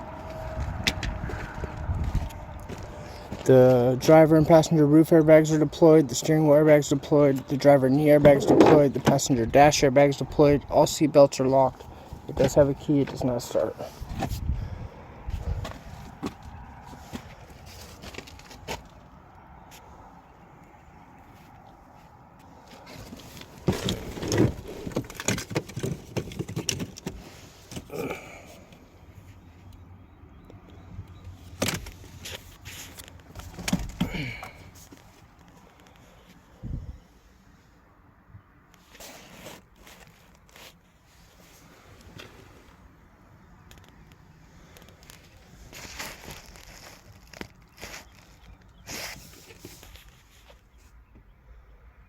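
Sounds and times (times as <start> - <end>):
faint footsteps scuffing: 0.2 - 3.5.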